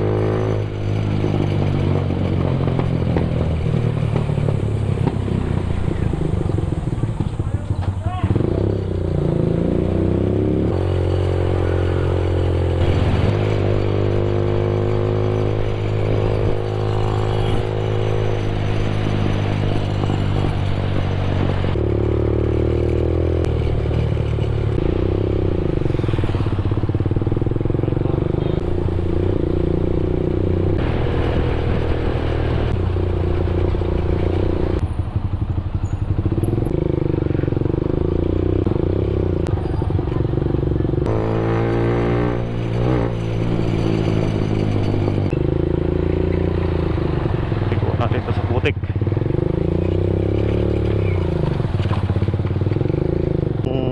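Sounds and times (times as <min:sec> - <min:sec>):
motorcycle engine running: 0:00.0 - 0:53.9.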